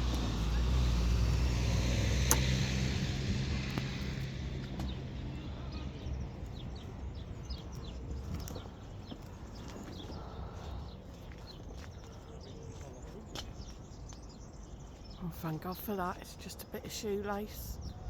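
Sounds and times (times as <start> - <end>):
vehicle engine running: 0.0 - 8.0.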